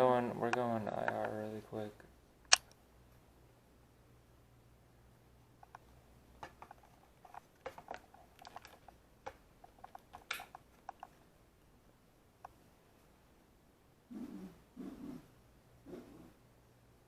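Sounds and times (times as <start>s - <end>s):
faint low hum: 0.0s - 17.0s
small clicks and taps: 5.6s - 11.2s.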